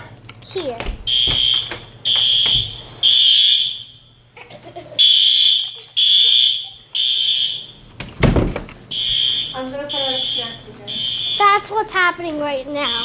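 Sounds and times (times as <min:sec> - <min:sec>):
fire alarm beeping: 0:01.1 - 0:04.3, 0:05.0 - 0:07.9, 0:08.9 - 0:11.7, 0:12.8 - 0:13.0.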